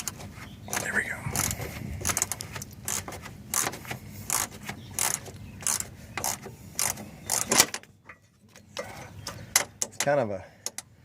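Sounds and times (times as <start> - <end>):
ratchet wrench clicking: 1.4 - 7.6.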